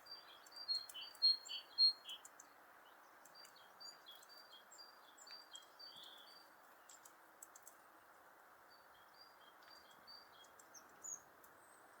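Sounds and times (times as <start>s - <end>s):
faint sharp clicks: 0.4s - 1.2s, 3.2s - 3.6s, 6.9s - 7.8s, 9.6s - 11.6s.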